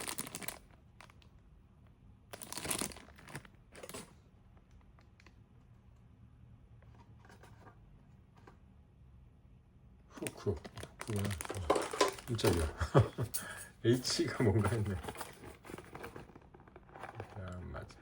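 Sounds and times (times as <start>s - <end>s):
packaging ripping: 0.0s - 1.2s, 2.3s - 4.1s, 10.2s - 12.7s.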